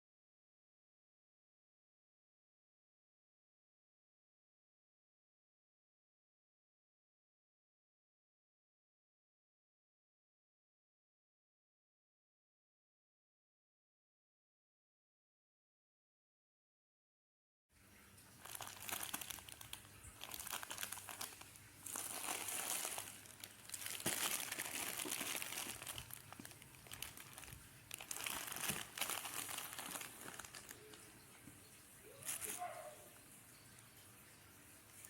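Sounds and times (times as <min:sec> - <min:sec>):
plastic bags crinkling: 0:18.3 - 0:31.4, 0:32.2 - 0:32.7.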